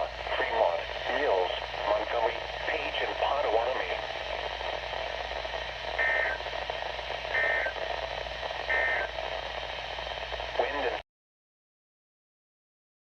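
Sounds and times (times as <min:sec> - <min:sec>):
radio hiss: 0:00.0 - 0:11.0
two-tone digital squawks: 0:06.0 - 0:06.4, 0:07.3 - 0:07.8, 0:08.7 - 0:09.1.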